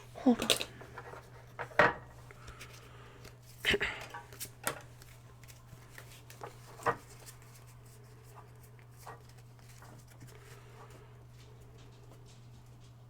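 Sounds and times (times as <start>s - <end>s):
hands handling card packs: 0.0s - 1.6s, 2.3s - 11.0s.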